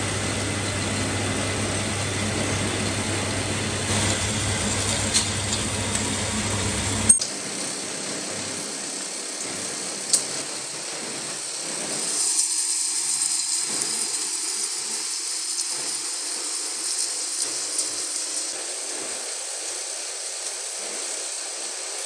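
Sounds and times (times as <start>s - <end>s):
lathe machine hum: 0.0s - 7.2s
steady high hiss: 0.0s - 7.2s.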